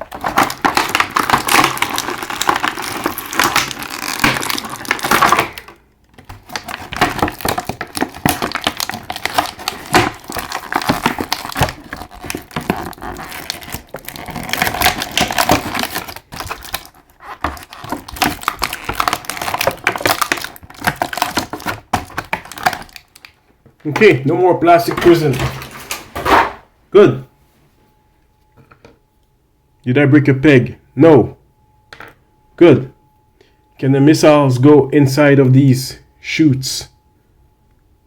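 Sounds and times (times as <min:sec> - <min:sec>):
plastic packaging crinkling: 0:00.0 - 0:26.2.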